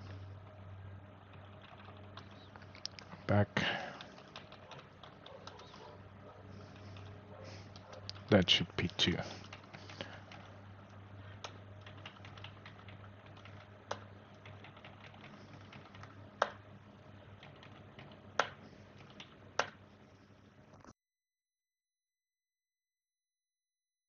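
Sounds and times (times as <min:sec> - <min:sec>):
low steady hum: 0:00.0 - 0:21.0
keyboard typing: 0:01.3 - 0:16.7, 0:17.3 - 0:19.9.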